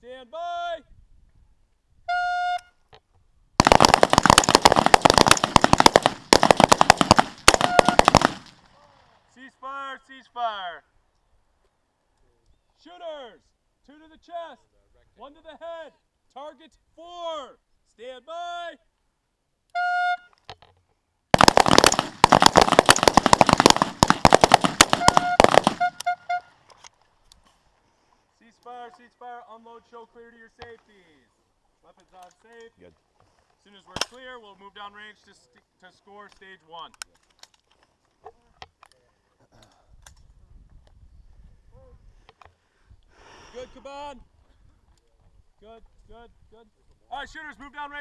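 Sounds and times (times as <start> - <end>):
rifle shots: 3.6 - 8.6, 21.3 - 26.0.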